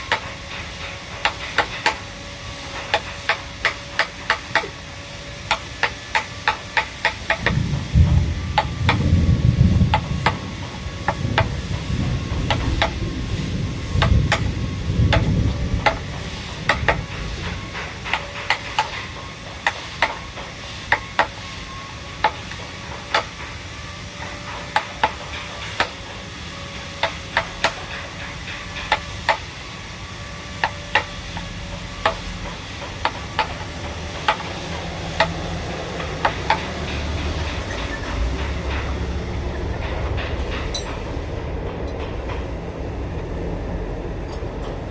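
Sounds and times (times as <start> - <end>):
mallet striking chisel: 2.9 - 4.8, 5.5 - 7.6, 30.6 - 35.5, 36.2 - 37.0
low rumble: 7.5 - 17.3.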